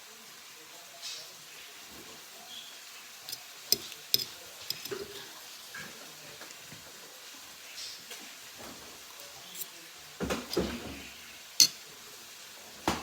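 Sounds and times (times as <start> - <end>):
utensil tapping a dish: 3.3 - 5.3, 10.2 - 11.8.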